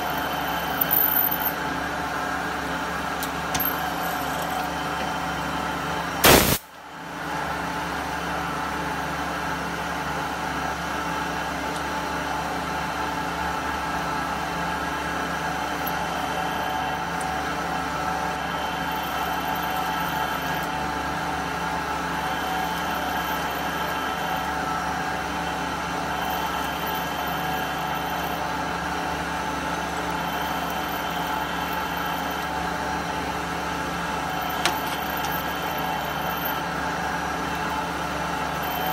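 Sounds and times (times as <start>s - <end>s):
machine hum with fixed tones: 0.0s - 7.5s, 10.7s - 38.9s
loud burst of noise: 6.2s - 6.7s.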